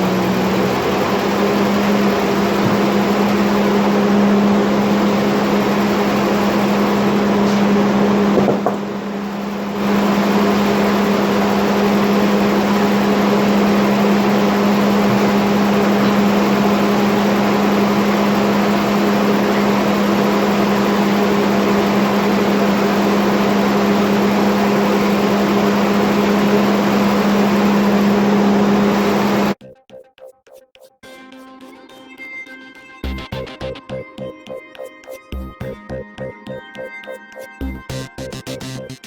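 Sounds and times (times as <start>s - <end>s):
electric motor humming: 0.0s - 29.6s.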